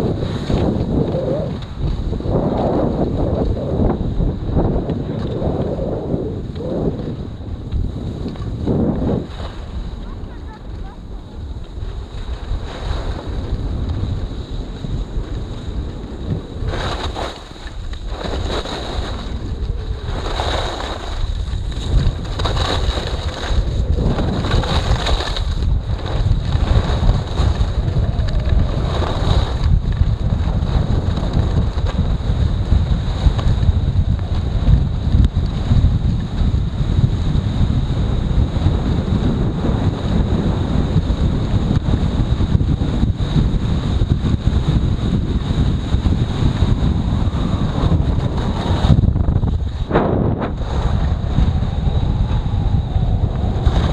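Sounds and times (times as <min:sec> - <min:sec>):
skis swishing through snow: 0:00.0 - 0:03.9, 0:04.5 - 0:31.0
wind buffeting microphone: 0:00.0 - 0:53.9.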